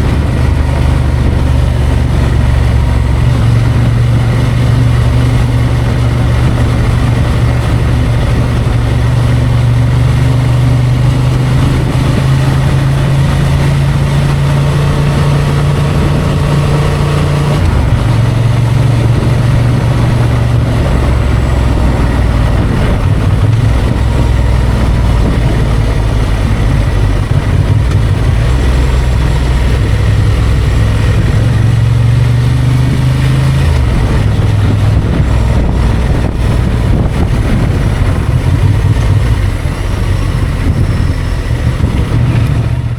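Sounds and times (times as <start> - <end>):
motorcycle engine running: 0.0 - 42.9
wind noise: 0.0 - 42.9.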